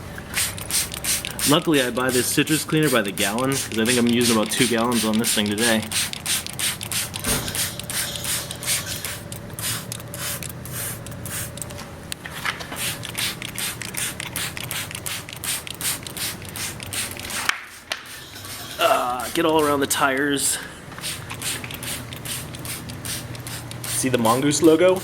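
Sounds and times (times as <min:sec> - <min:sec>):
spray bottle spritzing: 0:00.2 - 0:11.7, 0:12.7 - 0:24.4.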